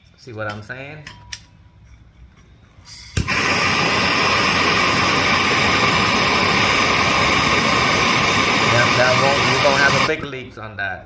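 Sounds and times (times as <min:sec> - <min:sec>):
torch flame hissing: 0:03.2 - 0:10.2
torch igniter click: 0:03.2 - 0:10.2.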